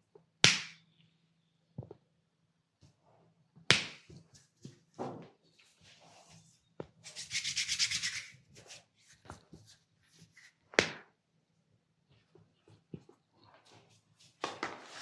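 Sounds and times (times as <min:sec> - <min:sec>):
hands rubbing briskly: 0:07.0 - 0:10.6.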